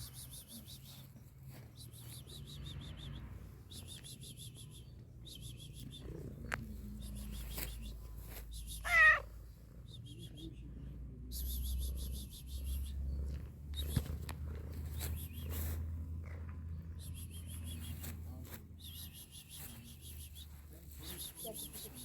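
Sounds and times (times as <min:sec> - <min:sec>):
cat meowing: 0:08.8 - 0:09.3.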